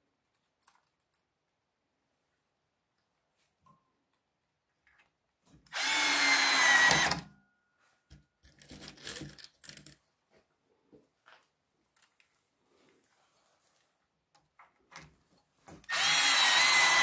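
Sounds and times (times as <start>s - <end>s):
power drill driving a screw: 5.7s - 7.3s, 15.9s - 17.0s.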